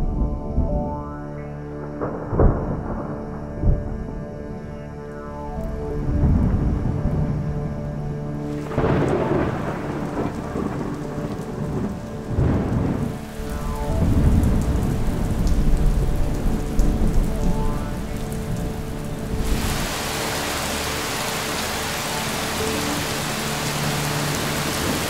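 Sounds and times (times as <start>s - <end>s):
rolling thunder: 2.0s - 4.2s, 8.5s - 25.0s
steady rain: 5.7s - 25.0s.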